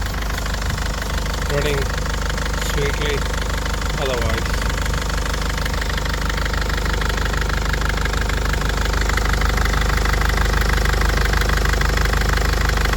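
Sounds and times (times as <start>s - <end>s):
van engine idling: 0.0s - 12.9s.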